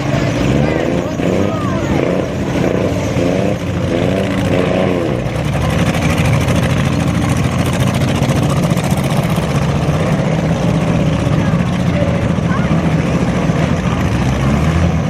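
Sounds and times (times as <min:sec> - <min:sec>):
car engines revving: 0:00.0 - 0:15.0.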